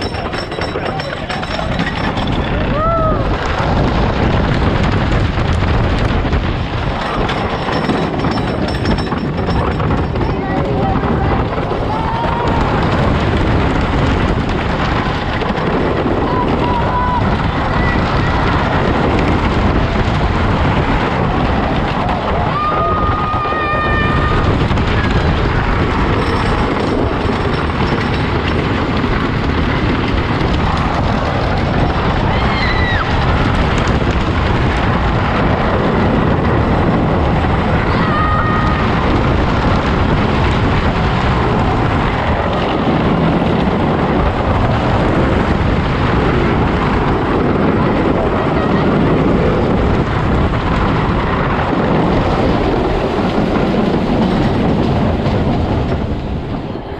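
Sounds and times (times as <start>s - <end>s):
roller coaster rumbling on wooden track: 0.0s - 56.9s
wind rushing over microphone: 0.0s - 56.9s
riders crying out: 21.8s - 28.2s, 31.8s - 33.5s, 37.8s - 39.4s.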